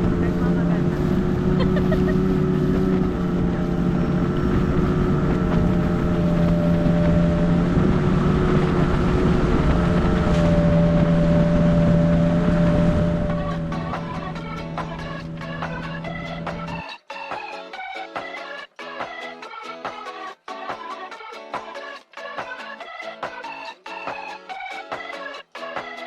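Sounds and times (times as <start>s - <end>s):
outboard motor running: 0.0s - 16.8s
wind on microphone: 0.0s - 16.8s.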